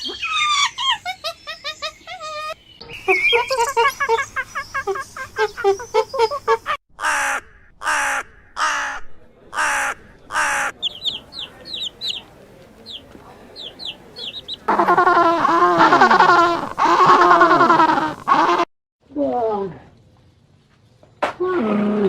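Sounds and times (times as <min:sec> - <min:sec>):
small birds chirping: 0:00.0 - 0:06.8, 0:10.4 - 0:18.6
drawn-out wavering animal call: 0:12.9 - 0:18.7.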